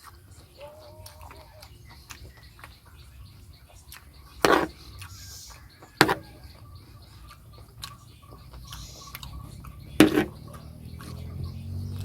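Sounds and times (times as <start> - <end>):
faint eating ticks and taps: 3.7 - 12.0.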